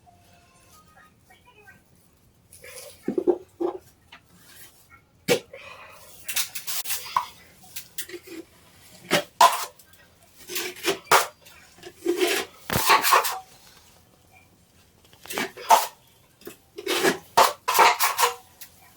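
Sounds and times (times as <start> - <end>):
drywall knife scraping and clinking: 10.5 - 13.4, 16.8 - 18.4.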